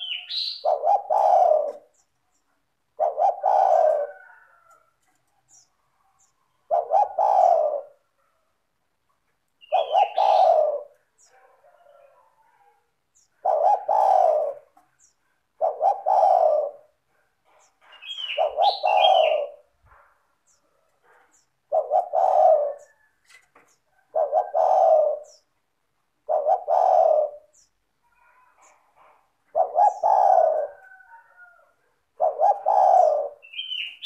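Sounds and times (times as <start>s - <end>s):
high bird chirps: 0.0s - 0.7s, 33.4s - 34.0s
dove cooing: 0.0s - 2.1s, 2.9s - 8.2s, 9.6s - 25.6s, 26.2s - 34.0s.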